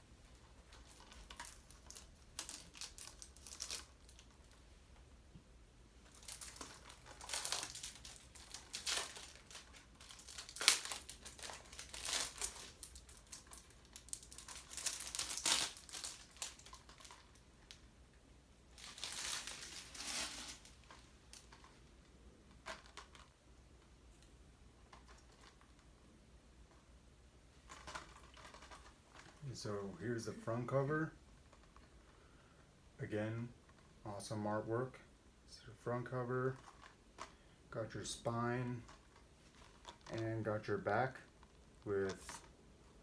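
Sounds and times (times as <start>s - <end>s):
plastic shrink wrap rustling: 0.1s - 4.8s, 6.0s - 17.9s, 18.7s - 23.4s, 24.9s - 25.8s, 27.5s - 30.7s, 36.5s - 37.4s, 38.8s - 43.0s.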